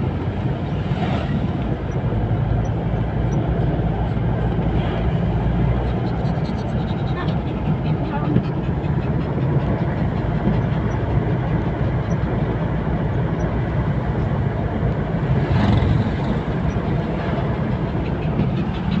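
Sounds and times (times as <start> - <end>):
vehicle engine rumbling: 0.0 - 19.0.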